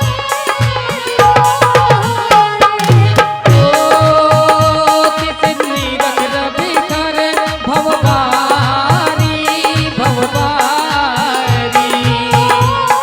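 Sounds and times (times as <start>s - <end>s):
held devotional melody: 0.0s - 13.0s
hand drum with sliding pitch: 1.1s - 3.7s.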